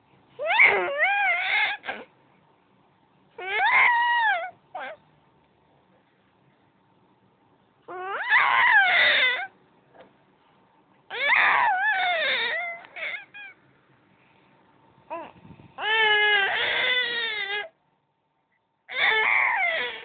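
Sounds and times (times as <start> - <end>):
baby crying: 0.4 - 2.1, 3.4 - 5.0, 7.9 - 9.5, 11.1 - 13.6, 15.1 - 17.8, 18.9 - 20.0.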